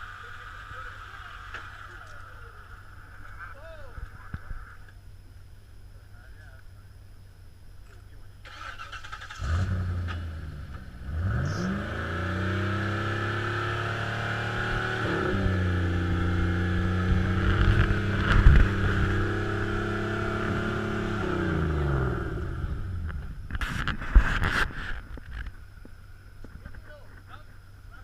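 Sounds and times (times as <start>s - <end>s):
engine revving: 8.5s - 23.2s.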